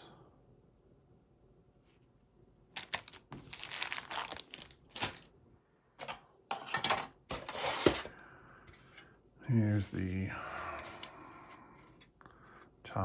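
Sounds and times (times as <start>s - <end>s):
plastic bags crinkling: 2.8s - 5.3s.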